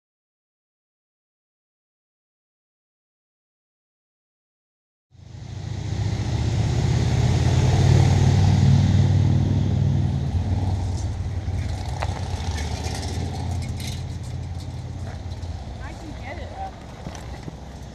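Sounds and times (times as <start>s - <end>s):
vehicle engine rumbling: 5.2s - 17.9s.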